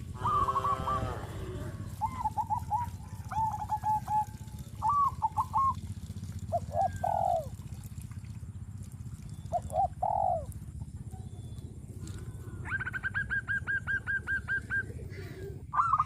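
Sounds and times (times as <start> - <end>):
low rumble: 0.0 - 6.7
birds calling: 0.0 - 16.0.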